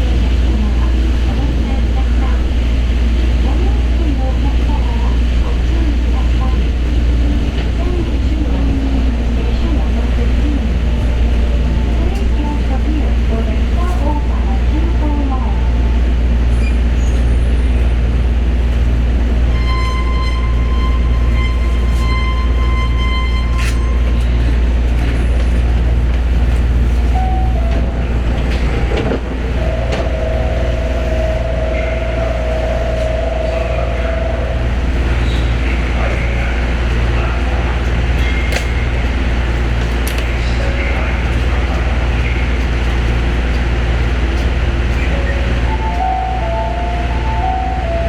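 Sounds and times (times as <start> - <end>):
train low rumble: 0.0 - 48.0
steady high tone: 29.3 - 36.0, 45.1 - 48.0.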